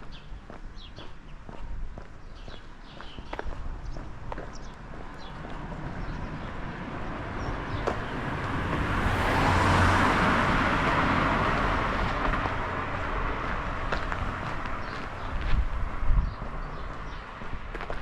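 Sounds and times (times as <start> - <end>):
car passing by: 5.0 - 18.0.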